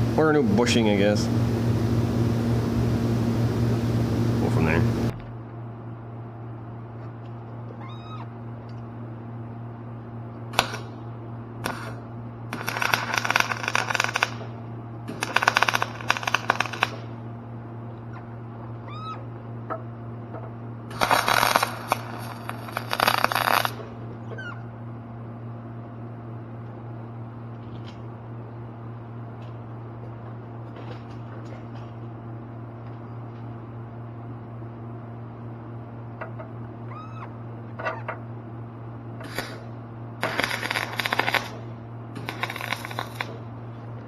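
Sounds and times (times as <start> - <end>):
electrical hum: 0.0 - 44.0
faint rising squeaks: 7.7 - 8.4, 18.1 - 19.3, 24.2 - 24.7, 36.8 - 38.2
harsh crackling bursts: 10.6 - 10.9, 11.6 - 14.5, 15.1 - 17.1, 20.9 - 23.8, 40.2 - 41.6, 42.2 - 43.4.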